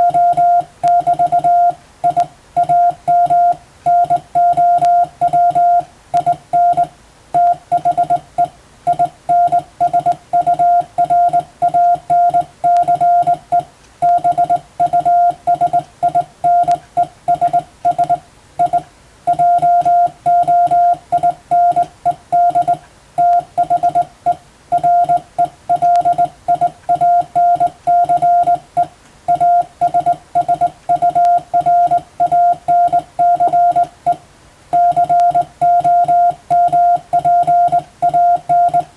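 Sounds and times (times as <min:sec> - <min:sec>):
morse code tone: 0:00.0 - 0:38.9.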